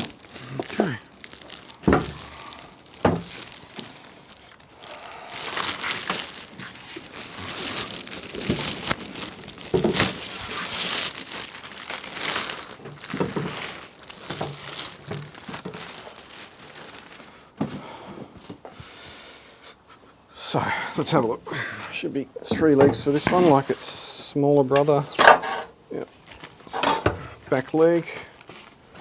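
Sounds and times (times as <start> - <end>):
packaging crinkling and rustling: 0.0 - 17.8, 24.8 - 29.0.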